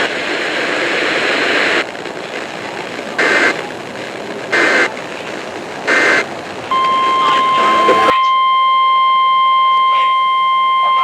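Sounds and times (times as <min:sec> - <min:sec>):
radio static hiss: 0:00.0 - 0:08.3
digital screeching data bursts: 0:05.9 - 0:08.1.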